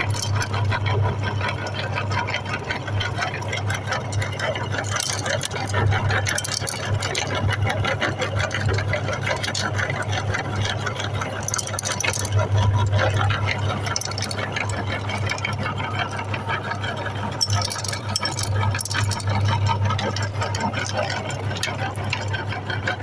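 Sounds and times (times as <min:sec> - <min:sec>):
electric meat grinder motor hum: 0:00.0 - 0:23.0
candy crackling and rattling: 0:04.7 - 0:07.5, 0:08.3 - 0:15.8, 0:17.3 - 0:22.2.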